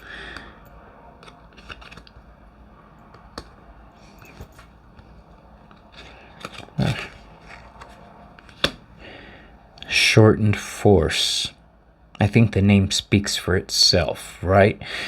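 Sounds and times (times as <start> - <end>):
cards being handled: 1.2 - 2.3, 3.1 - 8.9.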